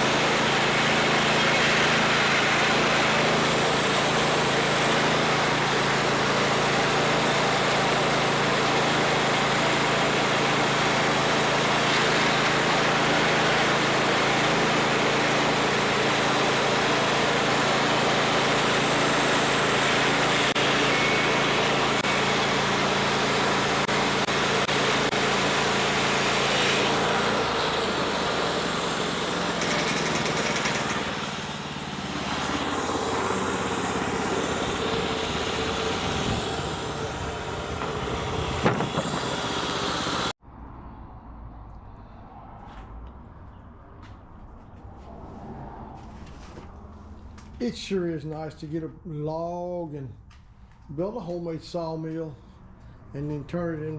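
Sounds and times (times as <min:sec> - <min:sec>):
saw cutting through log: 0:00.0 - 0:40.4
sawmill engine running: 0:00.0 - 0:40.4.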